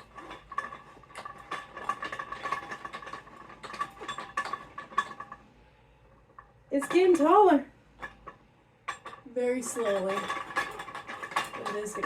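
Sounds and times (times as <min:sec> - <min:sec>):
metal clicking and scraping: 0:00.0 - 0:05.5, 0:08.0 - 0:12.0.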